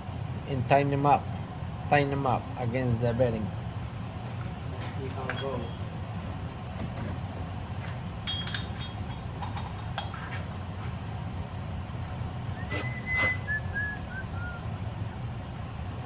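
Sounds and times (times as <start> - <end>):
steady low hum: 0.0 - 16.0
metal tools clinking and knocking: 5.1 - 5.9, 8.2 - 10.5
short high squeak: 12.6 - 13.6.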